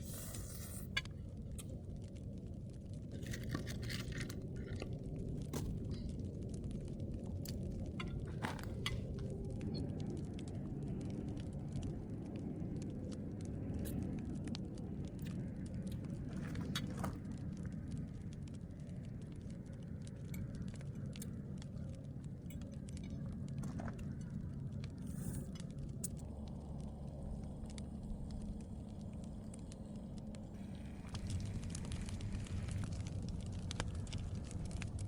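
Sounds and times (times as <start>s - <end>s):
campfire crackling: 0.0s - 35.0s
low rumble: 21.3s - 35.0s.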